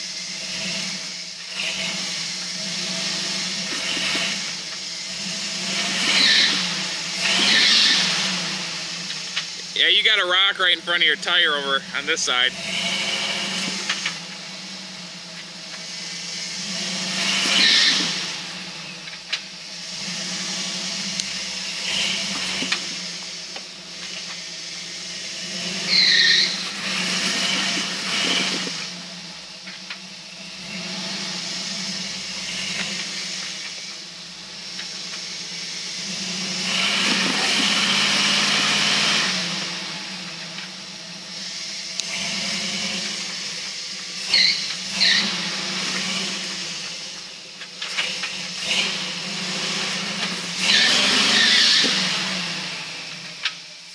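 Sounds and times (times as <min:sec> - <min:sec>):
engine running at low speed: 0:00.0 - 0:53.9
short high squeaks: 0:07.4 - 0:08.1, 0:17.5 - 0:18.1, 0:25.9 - 0:26.6, 0:44.3 - 0:45.4, 0:50.7 - 0:52.0.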